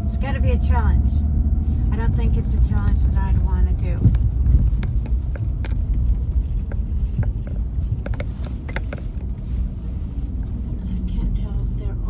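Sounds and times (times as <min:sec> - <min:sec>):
road and engine rumble: 0:00.0 - 0:12.0.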